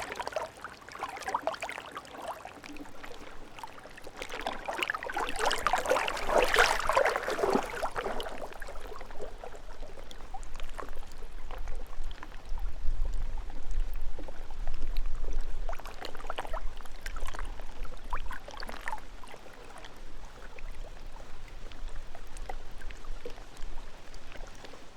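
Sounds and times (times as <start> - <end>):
waves lapping on rocky shore: 0.0 - 11.5.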